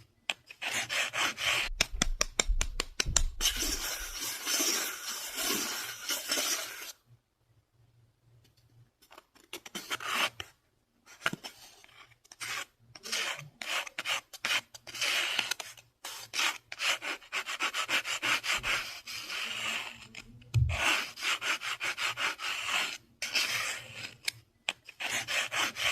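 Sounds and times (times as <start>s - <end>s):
fast scratching on surface: 0.5s - 7.0s, 11.5s - 24.3s, 24.9s - 25.9s.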